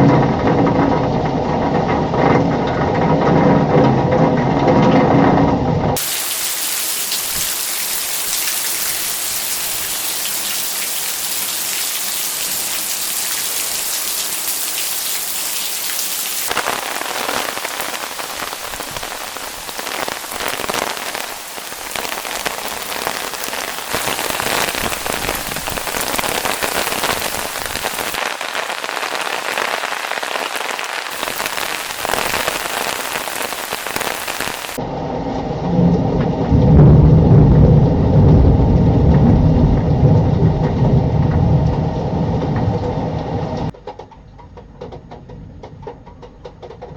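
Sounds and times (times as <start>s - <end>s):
heavy rain pouring: 6.0s - 34.8s.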